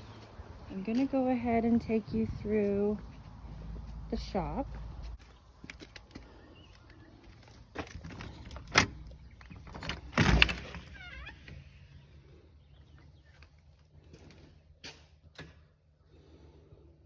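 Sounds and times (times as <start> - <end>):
door rattling and scraping: 7.7 - 11.8
door hinge squeaks: 10.6 - 11.7.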